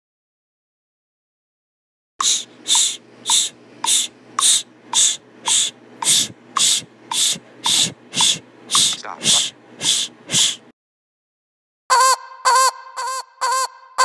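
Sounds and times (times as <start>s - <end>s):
sharp hissy beat hits: 2.2s - 10.6s.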